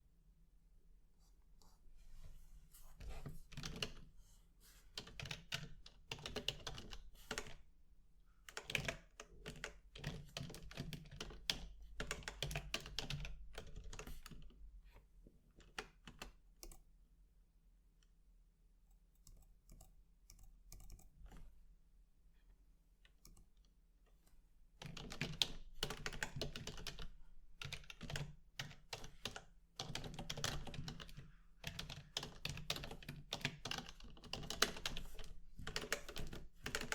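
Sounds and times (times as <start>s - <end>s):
typing on computer keyboard: 3.5s - 4.0s, 5.0s - 7.6s, 8.5s - 14.5s, 15.6s - 16.8s, 19.2s - 21.4s, 24.8s - 36.9s.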